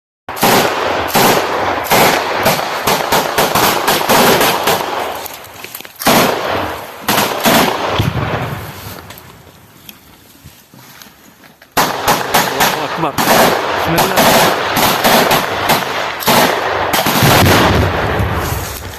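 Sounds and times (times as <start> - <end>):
heavier single gunshots: 0.3 - 5.2, 6.0 - 8.7, 11.8 - 18.7
machine-gun fire: 0.3 - 5.2, 6.0 - 8.6, 11.8 - 18.7.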